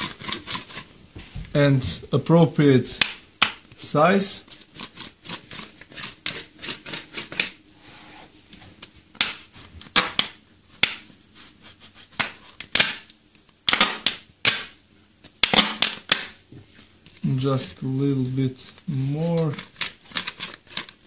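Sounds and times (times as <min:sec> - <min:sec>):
knife scraping plastic bottle: 0:00.0 - 0:00.9, 0:04.4 - 0:07.6, 0:17.1 - 0:21.0.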